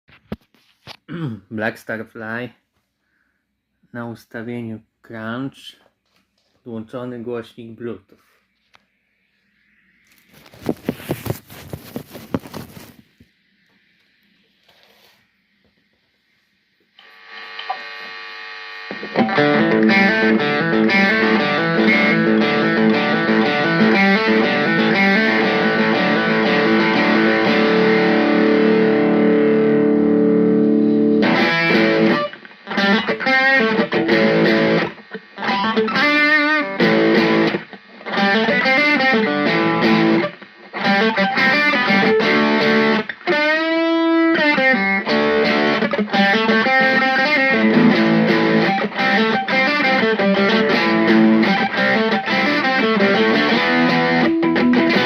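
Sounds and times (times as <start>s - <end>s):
distorted electric guitar chords: 16.9s - 55.0s.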